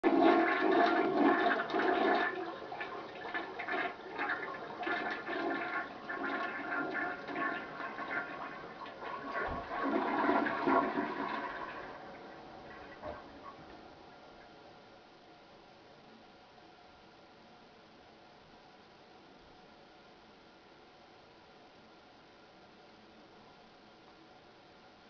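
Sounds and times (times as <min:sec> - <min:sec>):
toilet flushing: 0:00.0 - 0:13.8.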